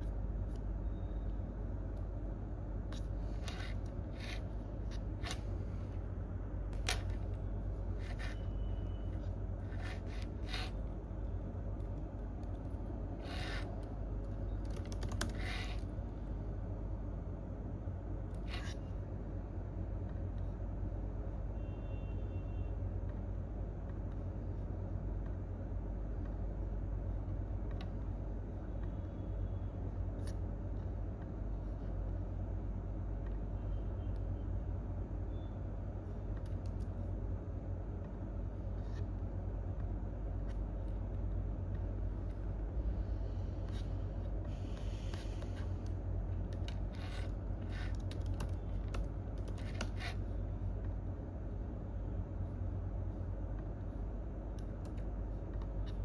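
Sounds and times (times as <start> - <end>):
office room hum: 0.0 - 56.0
keyboard and mouse clicks: 13.3 - 15.9, 45.2 - 50.2.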